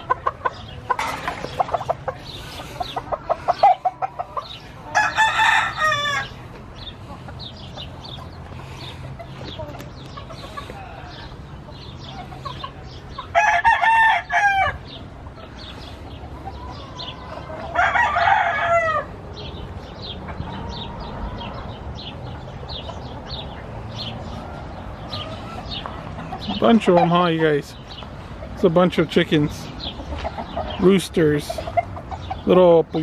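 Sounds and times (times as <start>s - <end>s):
chicks peeping: 0.0s - 33.0s
rooster crowing: 4.9s - 6.4s, 13.3s - 14.8s, 17.0s - 19.1s.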